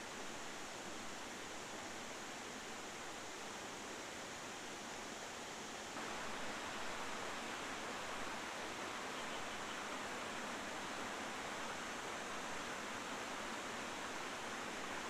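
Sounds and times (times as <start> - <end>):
heavy rain hissing: 5.9 - 15.0.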